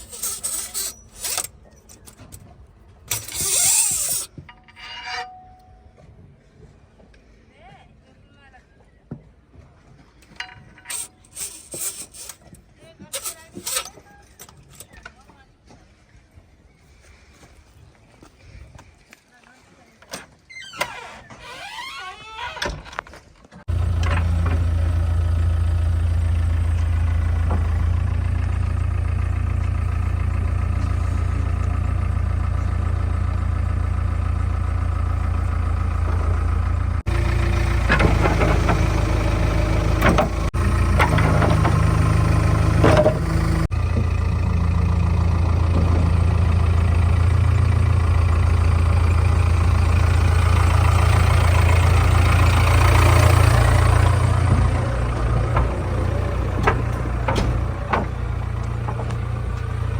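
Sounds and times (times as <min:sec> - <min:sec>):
diesel engine running: 0:00.0 - 0:02.2, 0:23.7 - 0:59.9
clattering knocks: 0:35.6 - 0:59.9.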